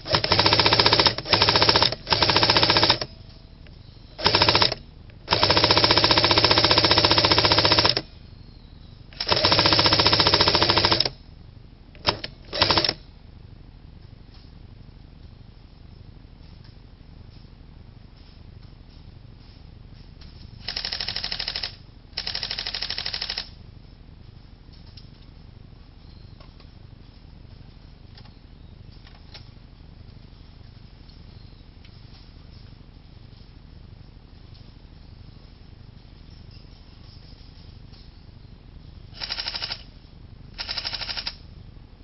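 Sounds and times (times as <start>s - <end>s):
airsoft gun full-auto bursts: 0.0s - 3.1s, 4.2s - 8.0s, 9.2s - 11.2s, 12.0s - 13.0s, 20.6s - 23.5s, 39.2s - 39.8s, 40.6s - 41.4s
faint outdoor background noise: 0.0s - 42.0s.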